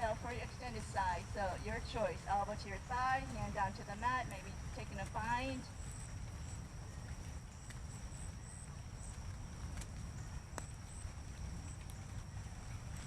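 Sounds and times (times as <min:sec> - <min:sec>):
insects droning: 0:00.0 - 0:13.0
wind buffeting microphone: 0:00.0 - 0:13.0
insect chirps: 0:05.6 - 0:13.0.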